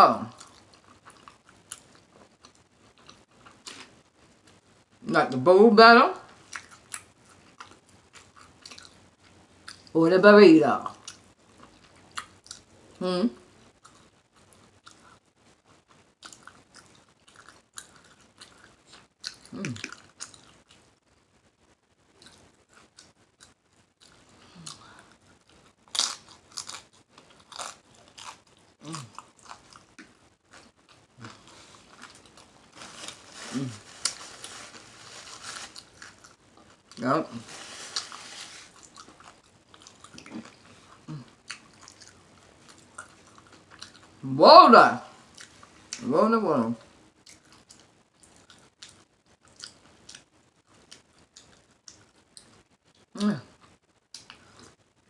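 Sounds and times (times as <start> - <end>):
lip smacking and chewing: 6.4 - 9.9, 13.6 - 21.0, 22.1 - 32.5, 38.8 - 44.2, 47.2 - 54.8.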